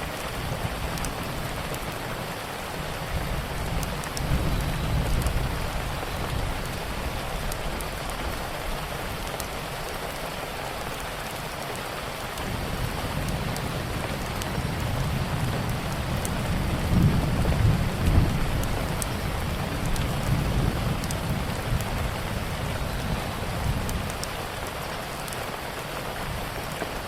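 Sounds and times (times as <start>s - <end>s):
steady rain: 0.0s - 27.0s
faint scattered clicks: 0.1s - 2.0s, 3.6s - 5.5s, 23.8s - 25.4s.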